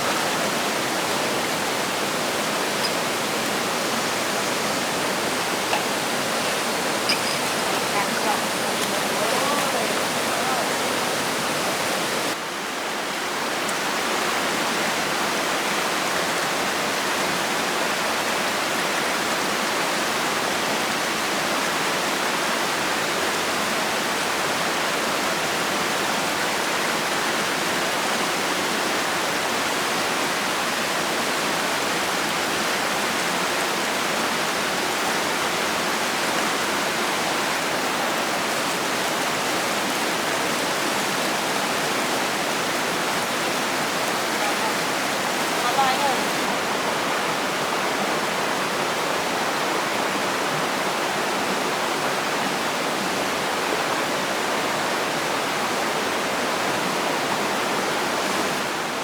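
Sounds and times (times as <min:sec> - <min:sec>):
rushing water: 0:00.0 - 0:59.0.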